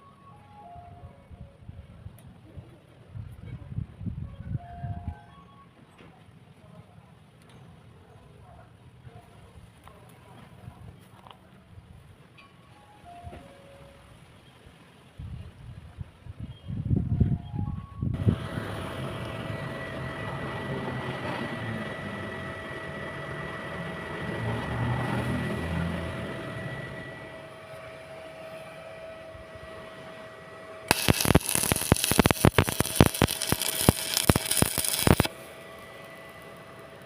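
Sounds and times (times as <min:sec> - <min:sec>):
steady hum with low rumble: 0:30.8 - 0:37.0
welding arc crackling: 0:30.9 - 0:37.0.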